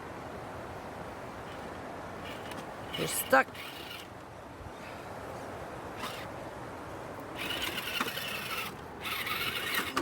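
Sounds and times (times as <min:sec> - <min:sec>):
steady background hiss: 0:00.0 - 0:10.0
electric motor and gears whirring: 0:02.2 - 0:04.1, 0:06.0 - 0:06.3, 0:07.4 - 0:10.0.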